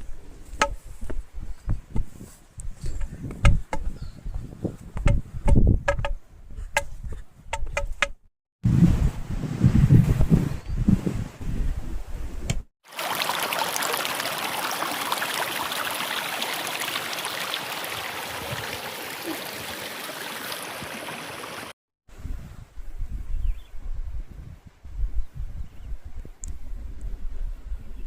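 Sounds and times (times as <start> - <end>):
mountain stream rushing: 12.9 - 21.8.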